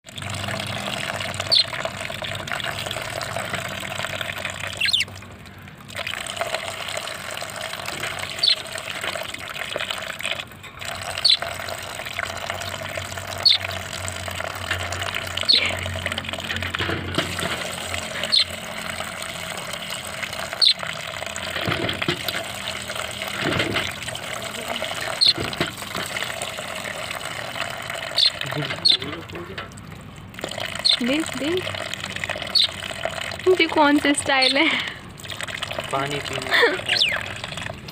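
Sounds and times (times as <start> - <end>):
tap water running: 0.1 - 37.9
small birds chirping: 1.4 - 2.9, 4.6 - 5.1, 8.2 - 8.8, 11.2 - 11.6, 12.6 - 13.8, 15.4 - 15.9, 18.2 - 18.6, 20.4 - 20.9, 24.6 - 26.3, 28.1 - 29.2, 30.7 - 31.7, 32.4 - 32.8, 34.2 - 34.6, 36.8 - 37.3.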